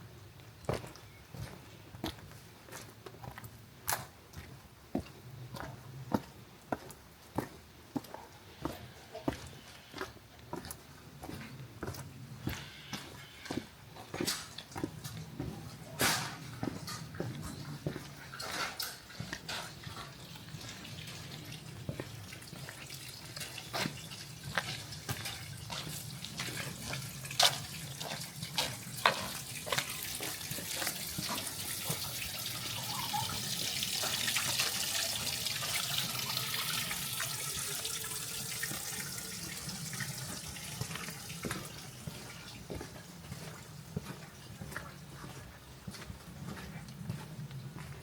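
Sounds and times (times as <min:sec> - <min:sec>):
running water splashing: 0:20.1 - 0:43.8.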